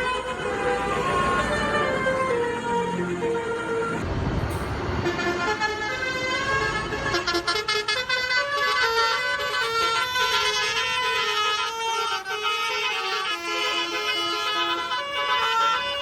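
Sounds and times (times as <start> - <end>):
low engine rumble: 0.0 - 10.8
multi-tone bus horn tune: 0.0 - 16.0.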